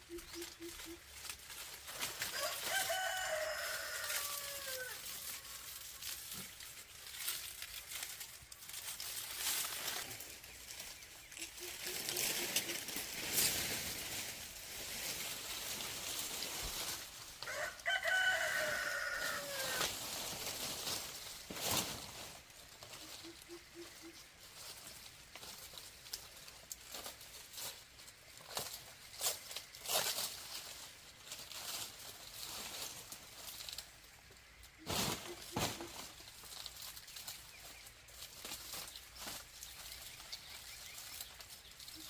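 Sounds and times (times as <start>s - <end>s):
rooster crowing: 2.3s - 5.2s, 17.4s - 19.9s.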